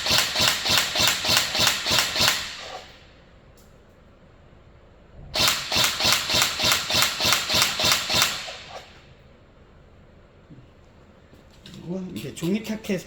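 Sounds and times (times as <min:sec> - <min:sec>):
airsoft rifle shots: 0:00.0 - 0:03.0, 0:05.4 - 0:09.0.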